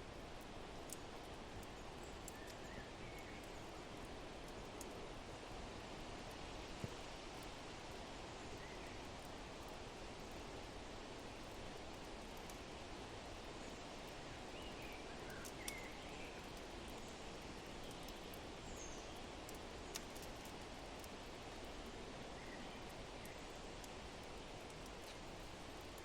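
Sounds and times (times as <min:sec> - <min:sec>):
wood fire popping: 0:00.1 - 0:22.1, 0:22.8 - 0:26.0.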